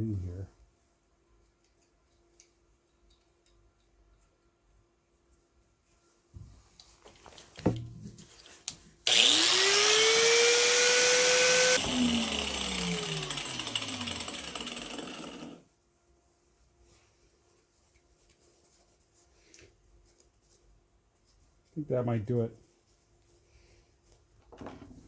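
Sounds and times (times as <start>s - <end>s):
electric grinder whining: 9.1s - 15.6s.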